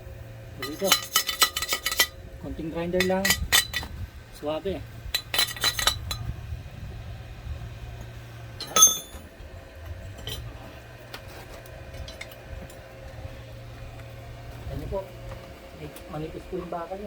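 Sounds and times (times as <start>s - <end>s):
low steady hum: 0.0s - 17.0s
steel pieces clinking: 0.6s - 2.2s, 5.1s - 6.2s, 8.6s - 9.3s
ringing metallic clank: 8.6s - 9.3s.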